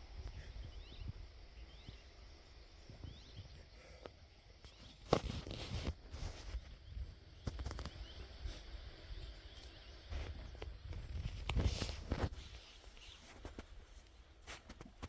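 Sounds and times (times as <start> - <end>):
wind rumble on microphone: 0.0 - 3.7, 4.6 - 12.7.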